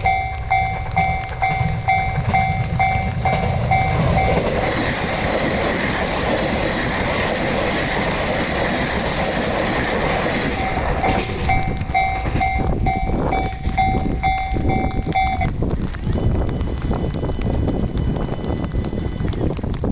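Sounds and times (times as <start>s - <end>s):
level crossing warning bell: 0.0s - 5.4s, 10.3s - 15.6s
train passing with rail noise: 0.0s - 19.9s.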